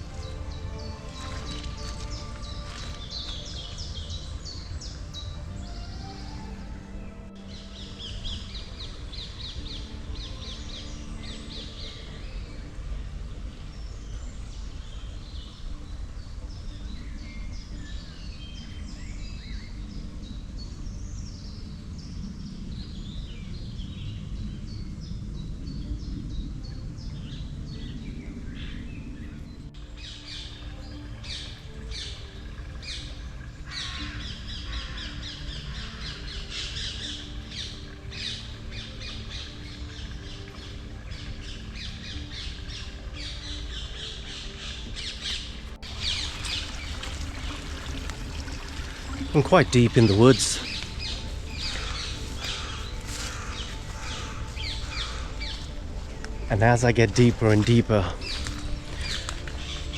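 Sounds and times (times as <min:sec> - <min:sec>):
birds singing and chirping: 0:00.0 - 0:59.9
rapid sharp bird calls: 0:41.8 - 0:59.9.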